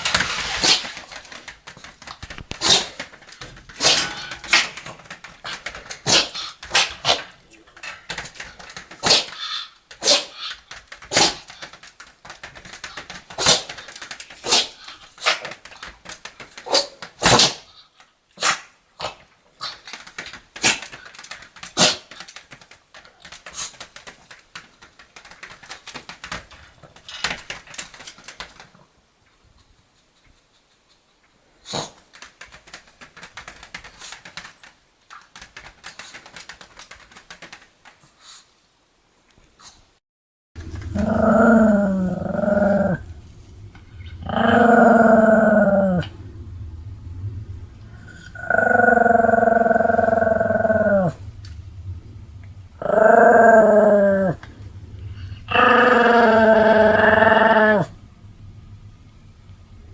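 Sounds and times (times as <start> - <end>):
dog sneezing: 2.6 - 3.0, 6.1 - 7.3, 9.0 - 9.4, 10.0 - 10.4, 14.4 - 15.4, 18.4 - 19.2, 21.8 - 22.1.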